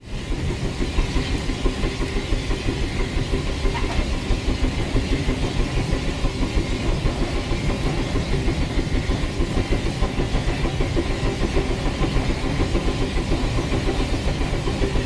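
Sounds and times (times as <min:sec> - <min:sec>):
steam locomotive chuffing: 0:00.0 - 0:15.0.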